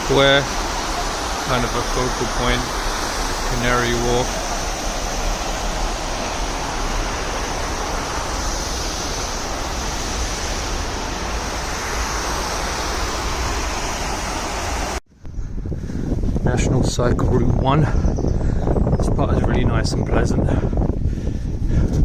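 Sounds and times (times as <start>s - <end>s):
fountain water splashing: 0.0s - 15.0s.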